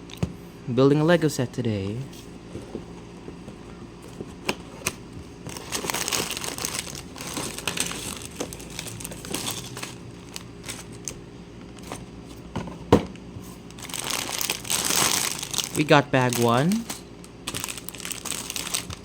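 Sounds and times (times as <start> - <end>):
plastic bags crinkling: 5.4 - 12.0, 13.6 - 19.0.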